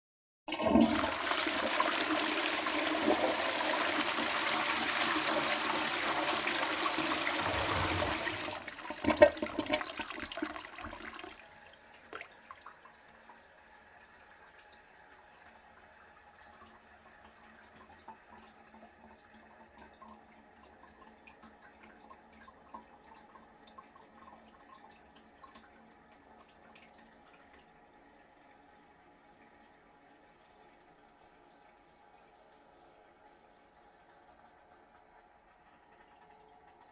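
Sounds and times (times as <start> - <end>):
bowl draining gurgling: 0.5 - 13.0
toilet flushing: 0.5 - 19.5.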